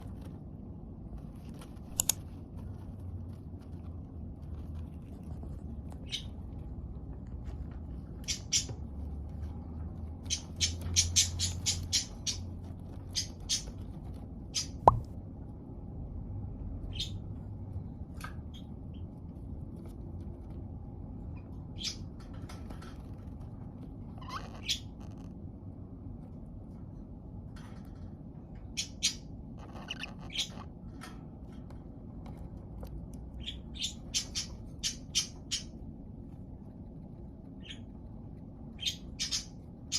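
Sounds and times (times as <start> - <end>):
low steady hum: 0.0 - 39.9
budgerigars chirping: 6.0 - 6.3, 8.2 - 8.8, 10.3 - 12.4, 13.1 - 13.7, 16.9 - 17.2, 28.8 - 30.6, 33.4 - 35.7, 38.8 - 39.9.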